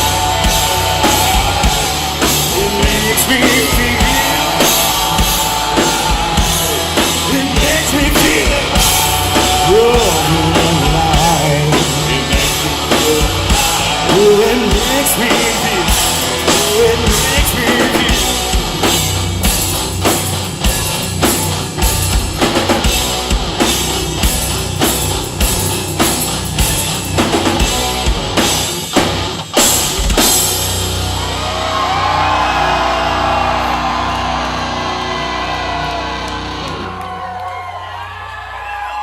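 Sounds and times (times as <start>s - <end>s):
crowd cheering and whooping: 0.0s - 19.0s, 30.6s - 39.0s
drum kit pounding: 0.0s - 37.4s
live rock band playing: 0.0s - 39.0s.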